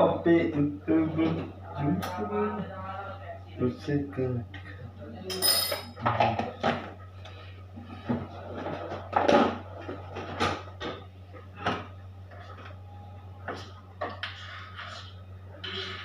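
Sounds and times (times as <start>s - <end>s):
steady low hum: 0.0s - 16.0s
kitchen utensils clattering: 5.3s - 6.6s.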